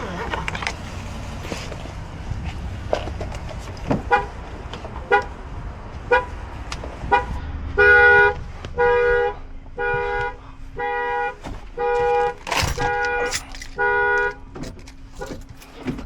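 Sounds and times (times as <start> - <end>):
car alarm horn honking: 7.1 - 14.5.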